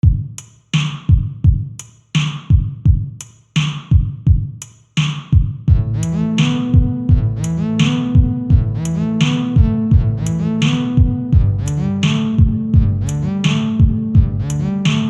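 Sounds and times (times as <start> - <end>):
drum beat: 0.0 - 15.0
sustained low chord: 5.7 - 15.0.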